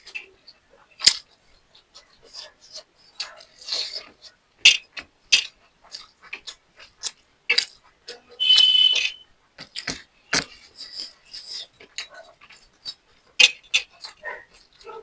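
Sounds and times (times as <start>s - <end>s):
chewing: 5.6s - 8.2s.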